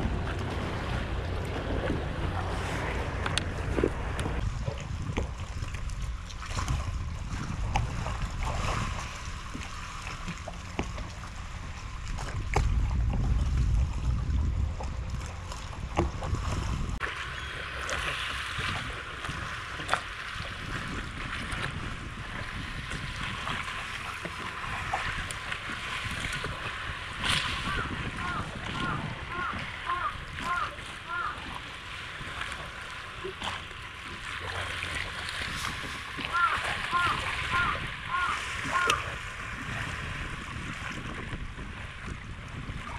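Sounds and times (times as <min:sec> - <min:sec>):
water lapping: 0:00.0 - 0:42.9
wind rumbling on microphone: 0:00.0 - 0:42.9.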